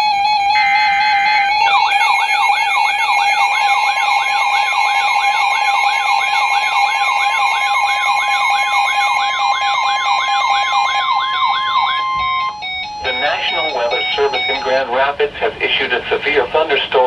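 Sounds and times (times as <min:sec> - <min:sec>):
siren-like sweeping tone: 0:00.0 - 0:14.8
steady high alarm tone: 0:00.0 - 0:15.4.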